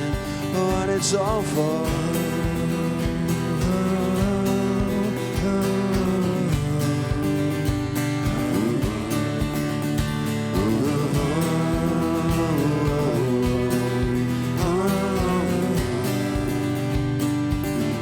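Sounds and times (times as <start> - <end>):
steady drum beat: 0.0 - 18.0
strummed acoustic guitar: 0.0 - 18.0.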